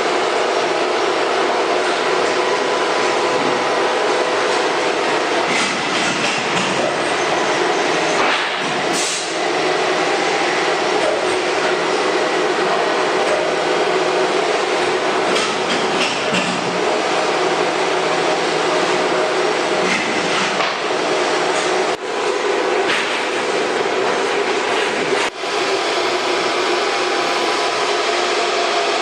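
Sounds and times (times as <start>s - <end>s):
router machinery running: 23.7s - 29.0s.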